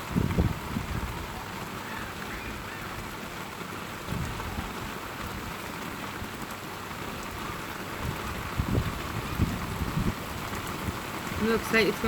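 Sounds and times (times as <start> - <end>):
thunder rumbling: 0.0 - 1.8
steady rain falling: 0.0 - 12.0.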